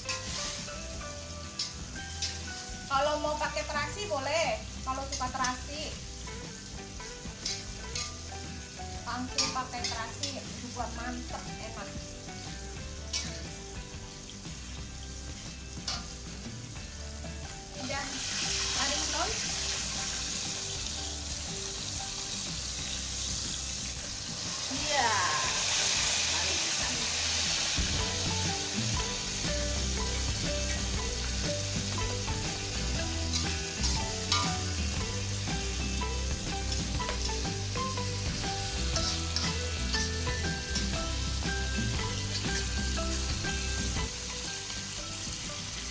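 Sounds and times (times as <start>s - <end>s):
background music: 0.0s - 45.9s
vegetables sizzling in a pan: 0.0s - 45.9s
utensil clicking against a pan: 1.6s - 2.5s, 7.4s - 8.3s, 13.1s - 13.4s, 15.8s - 16.2s, 33.3s - 34.6s.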